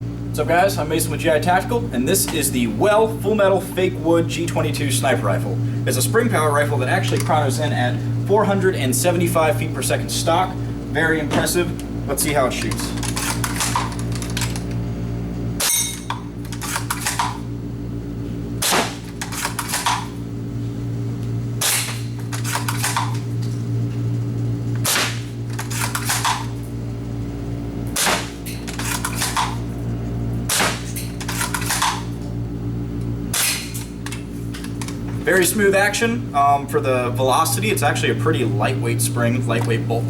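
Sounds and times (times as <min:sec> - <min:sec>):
airsoft rifle shot crack: 0:18.6 - 0:19.1, 0:21.6 - 0:22.0, 0:24.8 - 0:25.3, 0:28.0 - 0:28.4, 0:30.5 - 0:31.0, 0:33.3 - 0:33.8.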